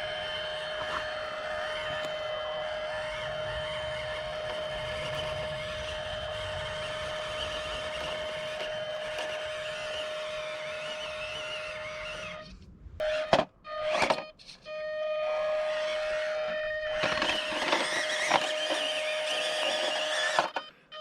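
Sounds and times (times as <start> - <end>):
electric motor whining: 0.0 - 21.0.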